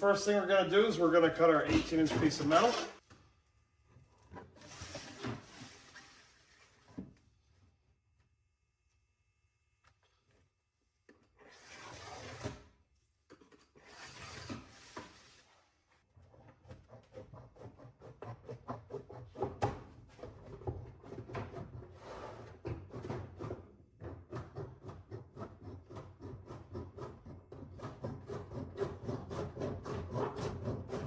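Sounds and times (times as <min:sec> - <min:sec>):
sheet metal cutting strokes: 0:00.0 - 0:03.0.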